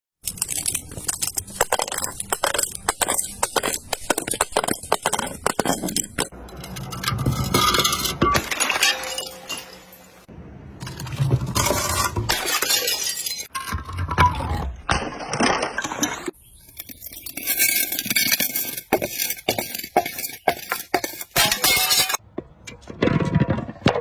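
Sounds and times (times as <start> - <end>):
sharp glass cracks: 0.2 - 6.7, 12.3 - 13.5
glass bottles crushing and breaking: 0.2 - 22.2.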